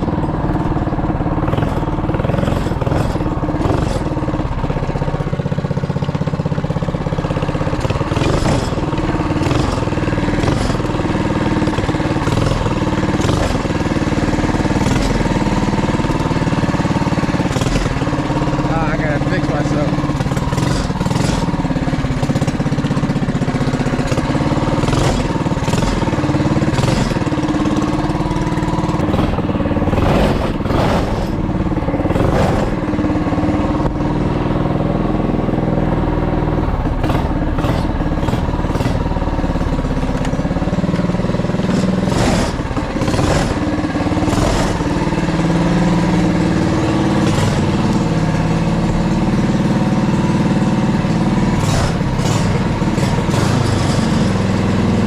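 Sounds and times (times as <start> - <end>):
small engine running: 0.0 - 55.0.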